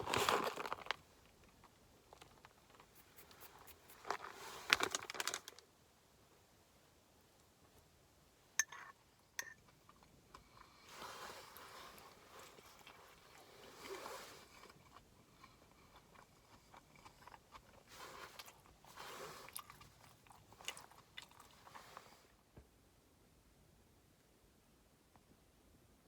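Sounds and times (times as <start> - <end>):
packaging crinkling: 0.0 - 1.0, 4.0 - 5.6
soft rustling: 2.1 - 5.6.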